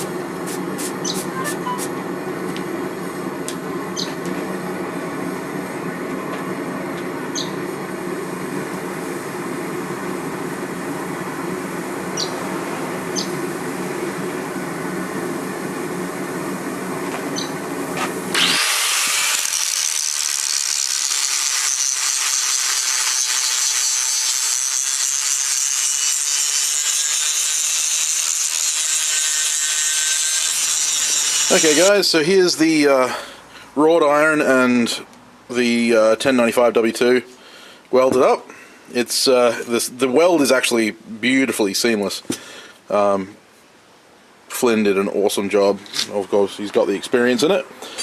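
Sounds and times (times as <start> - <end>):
power tool working steel: 18.0 - 32.1.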